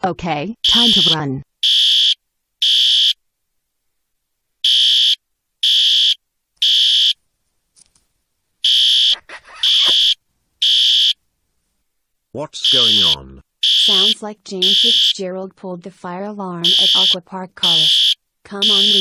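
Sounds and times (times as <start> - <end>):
fire alarm beeping: 0.6 - 3.2, 4.6 - 7.2, 8.6 - 11.2, 12.6 - 15.2, 16.6 - 19.0.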